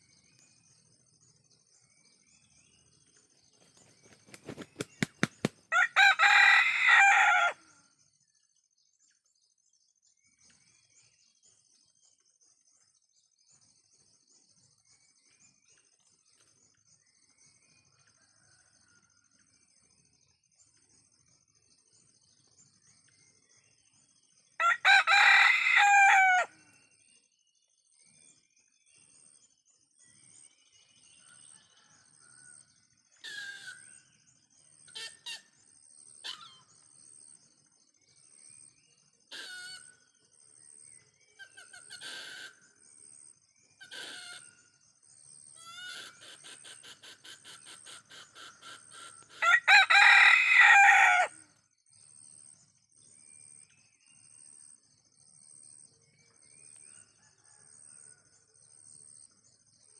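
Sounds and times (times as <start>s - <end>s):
crickets chirping: 0.0s - 8.9s, 32.9s - 59.9s
rooster crowing: 5.7s - 7.7s, 24.6s - 26.6s, 49.3s - 51.5s.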